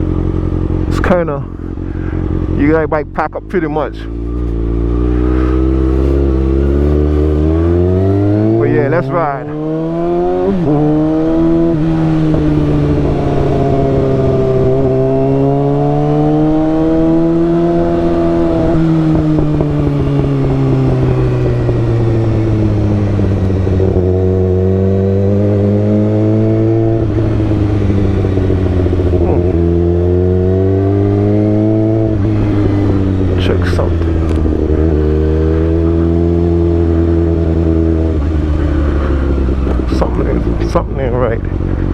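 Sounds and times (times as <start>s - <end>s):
motorcycle engine while riding: 0.0s - 41.9s.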